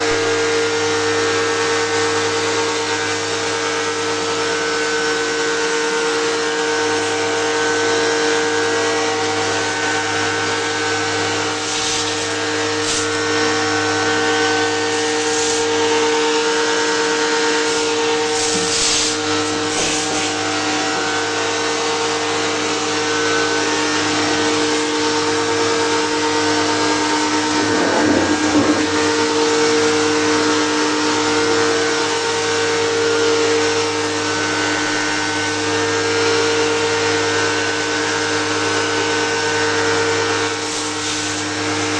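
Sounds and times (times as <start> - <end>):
short bursts of hiss: 17.7 - 20.3
motor humming: 26.7 - 29.5.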